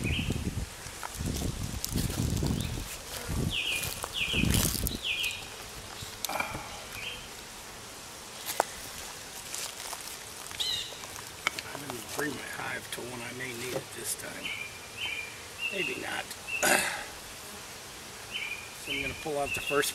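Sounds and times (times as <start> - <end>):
bird chirping: 0.0 - 0.4, 3.5 - 6.2, 7.0 - 7.3, 10.6 - 11.0, 14.2 - 16.7, 18.3 - 19.9.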